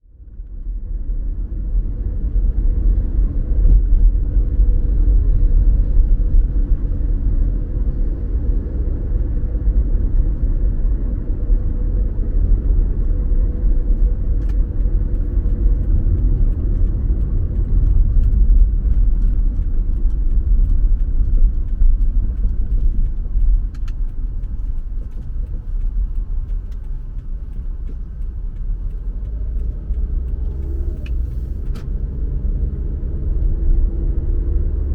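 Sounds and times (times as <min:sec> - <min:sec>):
car road rumble from inside: 0:00.0 - 0:34.9
light ticks: 0:12.4 - 0:34.5.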